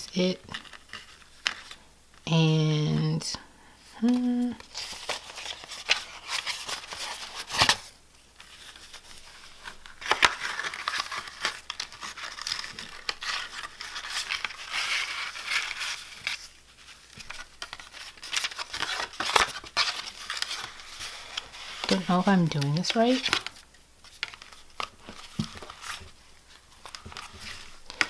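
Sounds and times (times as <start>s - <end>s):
paper rustling and crinkling: 0.5s - 1.8s, 3.8s - 28.0s.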